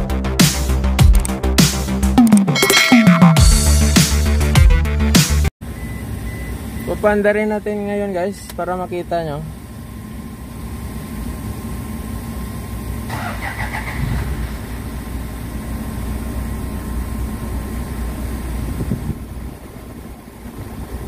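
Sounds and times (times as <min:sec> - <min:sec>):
car engine starting and idling: 0:05.6 - 0:21.0.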